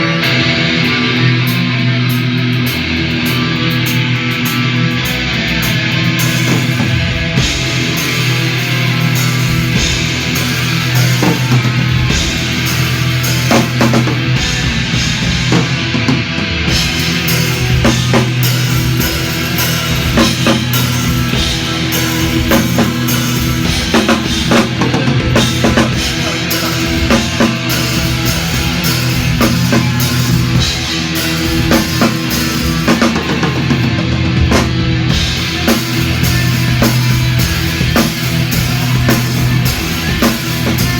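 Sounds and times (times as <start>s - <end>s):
drum kit beat: 0.0s - 40.9s
electric guitar: 0.0s - 40.9s
rock band playing: 0.0s - 40.9s.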